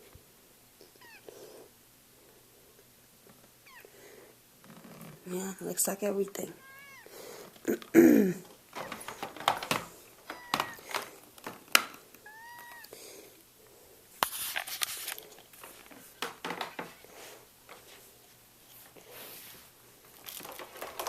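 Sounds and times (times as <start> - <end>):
cat meowing: 1.0 - 1.3, 6.6 - 7.1, 10.2 - 10.9, 12.2 - 12.9
clicks and knocks of handling: 8.7 - 12.8, 14.2 - 17.0, 20.1 - 21.0.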